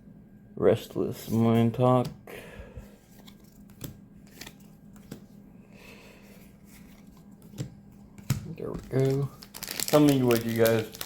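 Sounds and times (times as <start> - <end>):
trading cards rustling: 3.0 - 5.4, 8.5 - 11.0.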